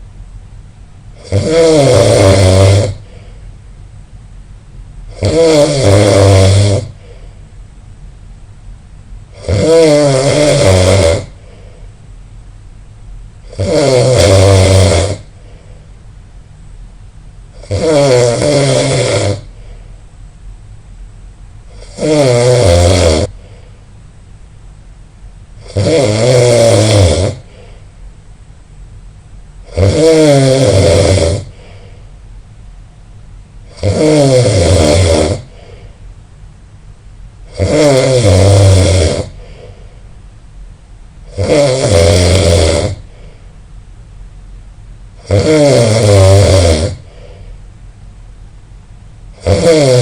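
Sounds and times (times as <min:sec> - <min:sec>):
loud snoring: 0:01.2 - 0:03.2, 0:05.1 - 0:07.2, 0:09.3 - 0:11.5, 0:13.4 - 0:15.4, 0:17.5 - 0:19.7, 0:21.7 - 0:23.6, 0:25.6 - 0:27.7, 0:29.6 - 0:31.8, 0:33.7 - 0:35.8, 0:37.5 - 0:39.8, 0:41.3 - 0:43.2, 0:45.2 - 0:47.4, 0:49.4 - 0:50.0.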